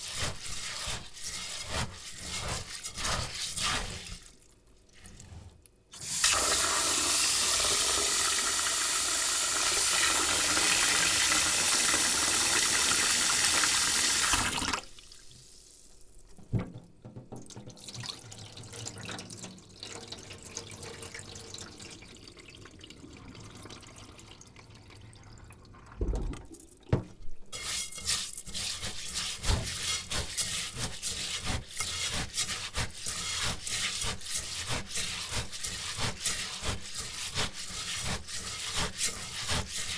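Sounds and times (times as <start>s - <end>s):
rice grains scraping bowl: 0.0s - 4.4s, 27.6s - 39.9s
rice swished in water: 0.0s - 4.4s, 27.6s - 39.9s
knock: 16.4s - 17.7s.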